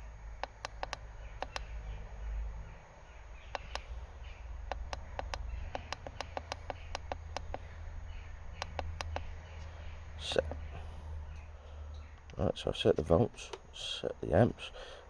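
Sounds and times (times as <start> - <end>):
faint bird chirps: 0.3 - 12.6
buttons clicking: 0.4 - 1.7, 3.5 - 3.9, 4.7 - 7.7, 8.6 - 9.3.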